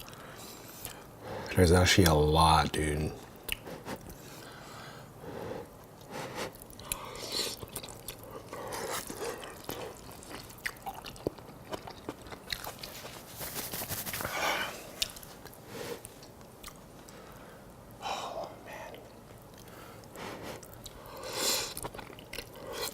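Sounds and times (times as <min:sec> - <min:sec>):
wet chewing and slurping: 0:03.5 - 0:04.4, 0:06.0 - 0:13.3, 0:19.0 - 0:22.9.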